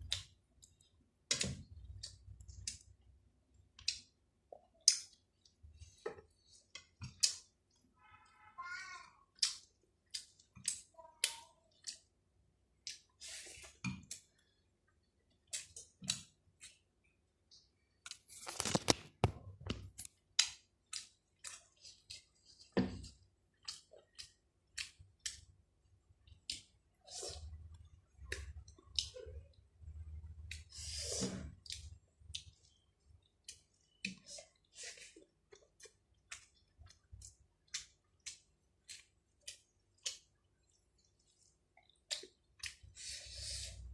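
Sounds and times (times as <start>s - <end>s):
chewing and lip-smacking: 20.0s - 22.6s, 23.5s - 25.5s, 31.6s - 43.0s.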